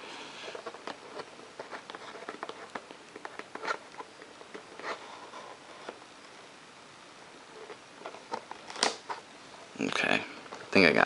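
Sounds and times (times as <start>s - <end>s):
cardboard snapping: 8.3s - 9.1s.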